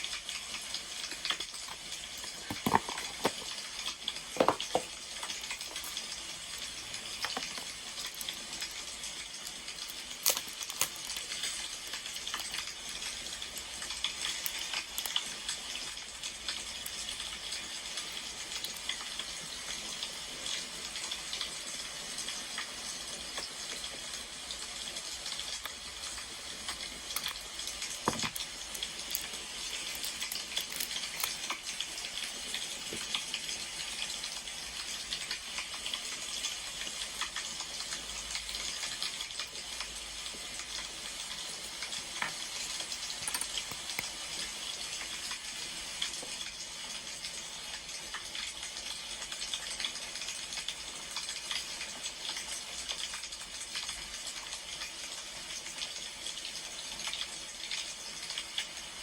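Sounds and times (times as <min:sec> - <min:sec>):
wood fire crackling: 0:00.3 - 0:19.9, 0:25.5 - 0:33.4.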